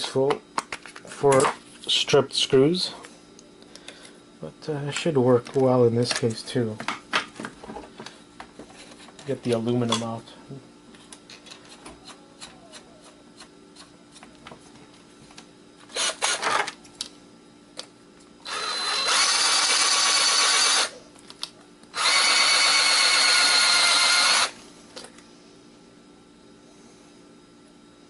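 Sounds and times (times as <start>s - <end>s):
power drill whining: 15.9s - 16.5s, 18.4s - 20.9s, 21.9s - 24.6s.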